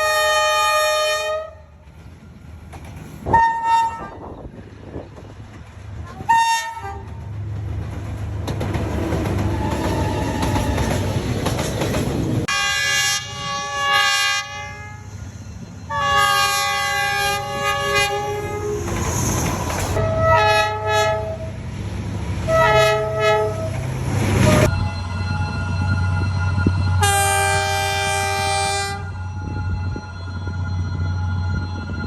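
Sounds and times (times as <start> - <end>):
locomotive horn: 0.0 - 1.7, 3.2 - 4.4, 6.1 - 7.1, 12.5 - 15.1, 15.9 - 18.9, 20.0 - 21.6, 22.4 - 23.8, 27.0 - 30.0
train rumbling on rails: 0.0 - 32.0.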